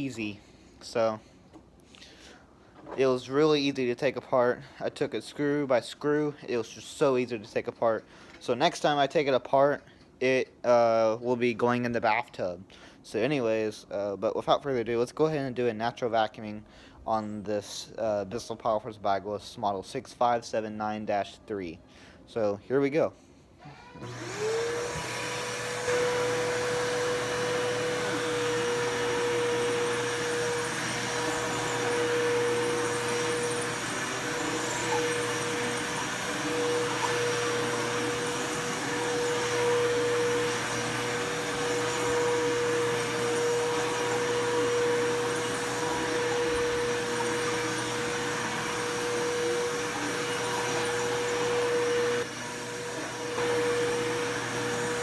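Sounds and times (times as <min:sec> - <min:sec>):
upright vacuum cleaner running: 0:24.0 - 0:55.0.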